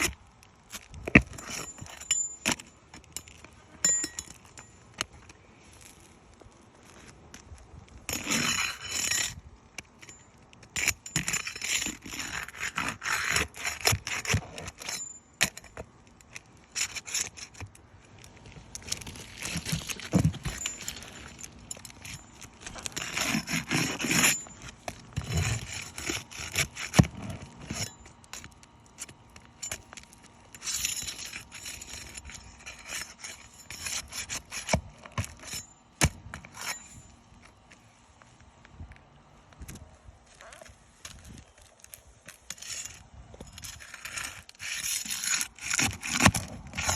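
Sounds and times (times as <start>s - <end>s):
scraping and rustling on shingles: 0.0s - 46.9s
metallic clinks: 1.6s - 4.9s.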